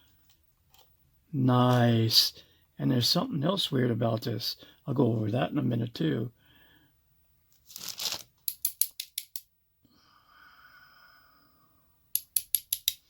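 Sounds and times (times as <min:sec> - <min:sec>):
small metal clicks: 0:08.4 - 0:09.5, 0:12.1 - 0:13.0.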